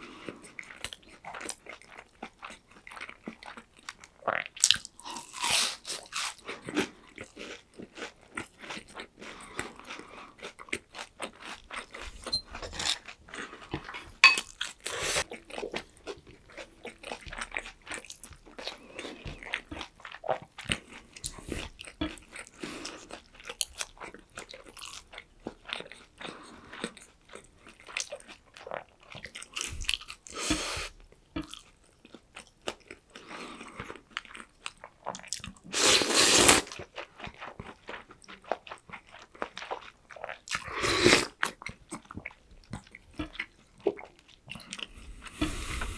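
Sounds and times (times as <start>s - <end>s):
chewing: 0.1s - 30.7s, 31.4s - 45.9s
crunching of fried crust: 0.4s - 12.0s.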